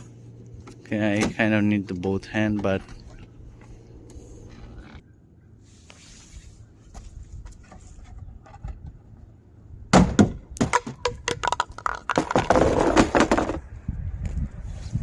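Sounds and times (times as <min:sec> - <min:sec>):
plastic scraping and rattling: 0:10.7 - 0:13.6.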